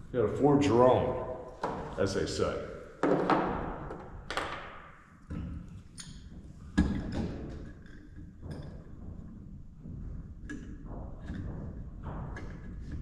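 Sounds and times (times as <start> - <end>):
knocks and thumps of lumber: 3.0 - 4.7.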